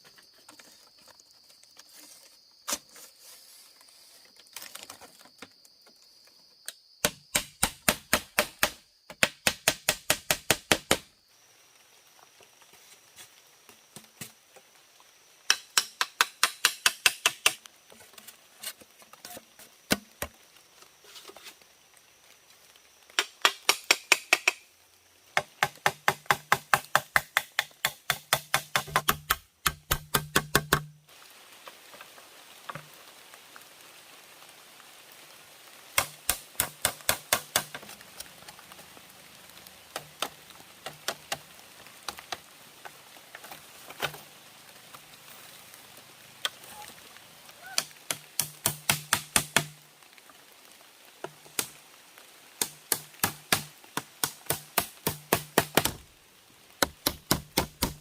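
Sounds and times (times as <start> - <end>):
sharp chopping strikes: 7.0 - 11.0, 25.6 - 30.9, 48.1 - 49.8, 52.6 - 56.0, 56.8 - 58.0.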